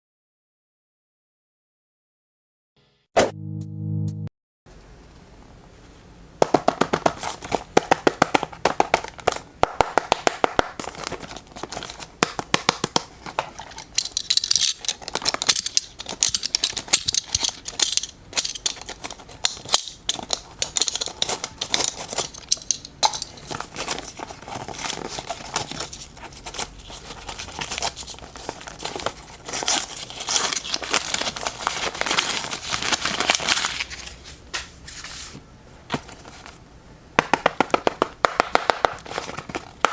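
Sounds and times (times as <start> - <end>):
packaging crinkling and tearing: 13.1 - 34.2.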